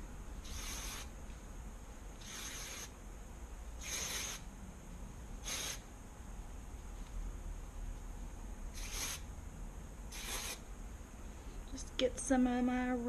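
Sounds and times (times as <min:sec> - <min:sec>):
aerosol can spraying: 0:00.4 - 0:01.1, 0:02.2 - 0:02.9, 0:03.8 - 0:04.5, 0:05.4 - 0:05.8, 0:08.8 - 0:09.2, 0:10.1 - 0:10.6.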